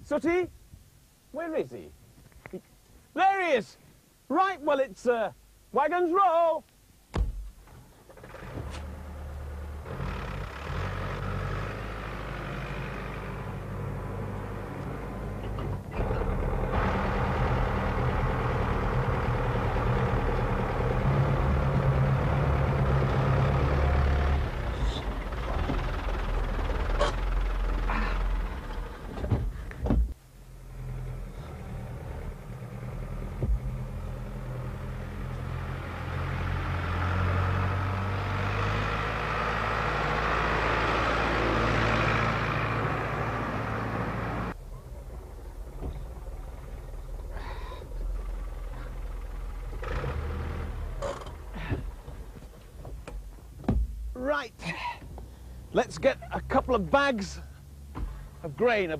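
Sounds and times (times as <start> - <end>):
sharp knocks: 7.1 - 7.5
tractor engine under load: 7.3 - 58.9.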